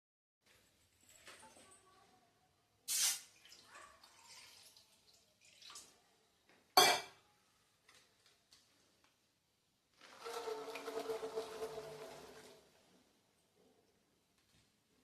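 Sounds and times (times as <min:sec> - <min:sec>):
faint kitchen clatter: 0:00.4 - 0:09.3.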